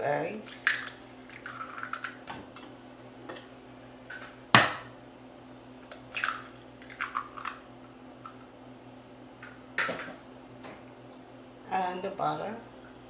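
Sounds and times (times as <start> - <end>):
egg cracking on bowl rim: 0.4 - 2.3, 5.8 - 8.5.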